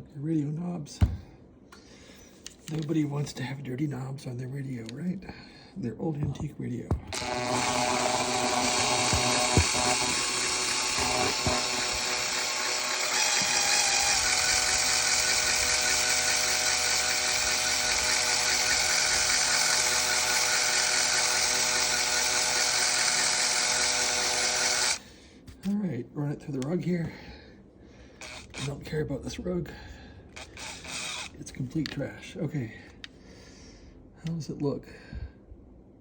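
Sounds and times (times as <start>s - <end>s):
electric drill motor whine: 7.1s - 25.0s, 28.2s - 28.8s, 30.4s - 31.4s.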